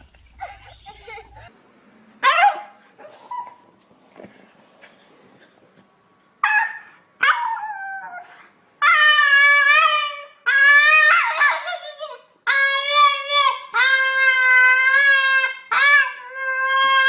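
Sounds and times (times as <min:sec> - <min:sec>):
dog yelping: 0:00.3 - 0:01.5, 0:02.2 - 0:03.7, 0:06.4 - 0:17.0.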